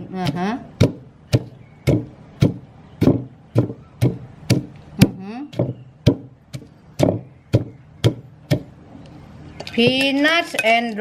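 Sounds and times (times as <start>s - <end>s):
pestle pounding in mortar: 0.0s - 8.8s.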